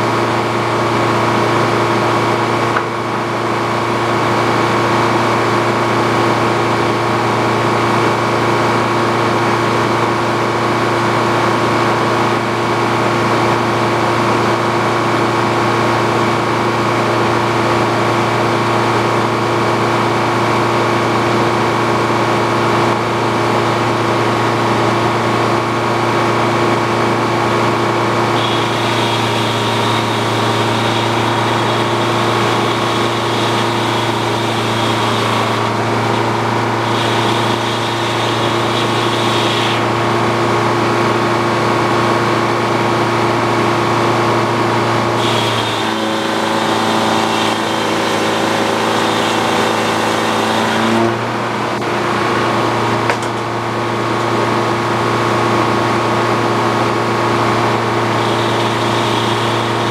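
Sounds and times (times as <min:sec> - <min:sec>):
sawmill machinery drone: 0:00.0 - 0:59.9
thin high whine: 0:28.2 - 0:40.5, 0:45.2 - 0:50.9, 0:57.6 - 0:59.9.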